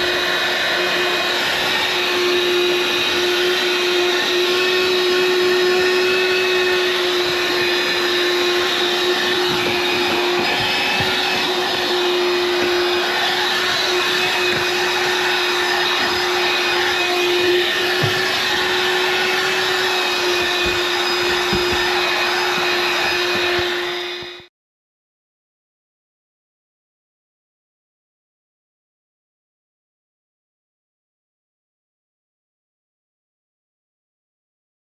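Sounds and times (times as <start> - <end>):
handheld vacuum motor whine: 0.0 - 24.5.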